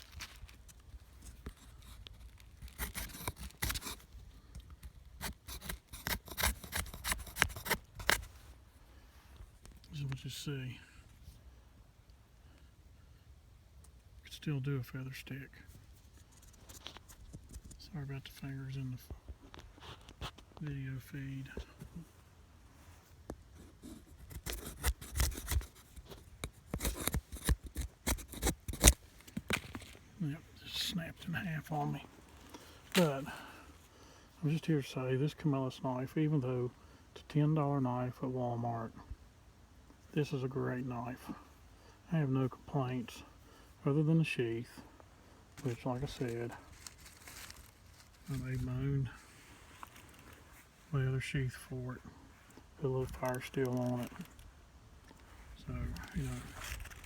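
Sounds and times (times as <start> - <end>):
knife scraping wood: 1.4 - 4.1, 5.2 - 8.3, 23.6 - 30.0.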